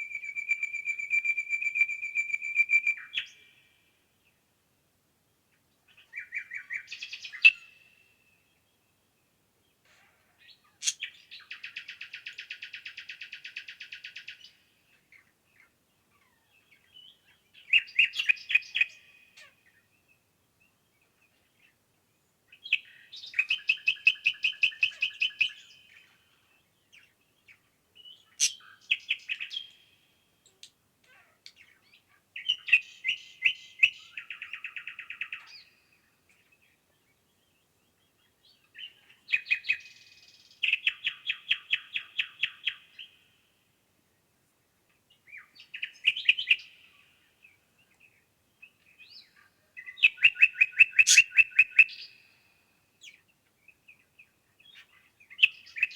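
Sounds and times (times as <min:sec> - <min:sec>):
songbird trilling: 0:28.3 - 0:29.7, 0:49.8 - 0:52.1.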